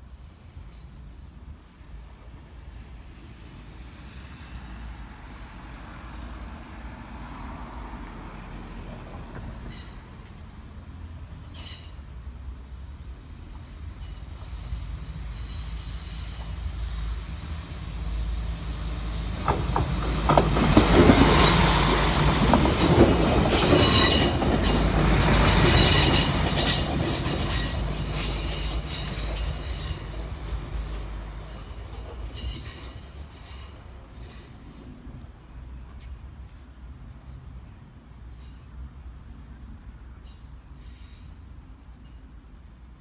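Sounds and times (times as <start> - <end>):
train rumble: 0.0 - 43.0
train wheels squealing on rails: 9.1 - 10.4, 11.4 - 12.2, 13.3 - 34.9, 38.2 - 39.0, 40.0 - 43.0.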